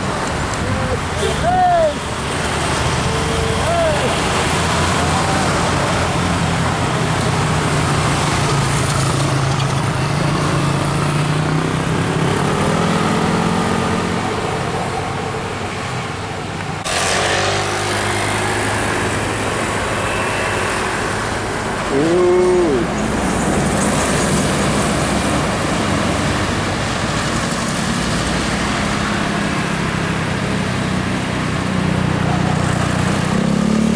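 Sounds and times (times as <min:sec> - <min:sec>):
heavy vehicle engine climbing: 0:00.0 - 0:33.9
road and tyre noise: 0:00.0 - 0:33.9
louder different engine: 0:16.8 - 0:33.9.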